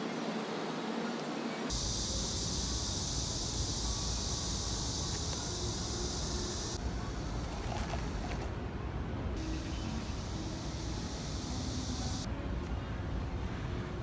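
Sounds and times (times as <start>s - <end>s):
high steady hiss: 0.0s - 12.3s.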